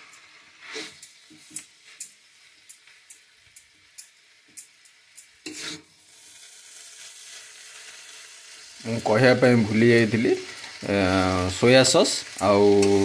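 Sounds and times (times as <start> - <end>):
noodles sizzling: 0.0 - 13.0
spatula scraping pan: 5.4 - 5.9.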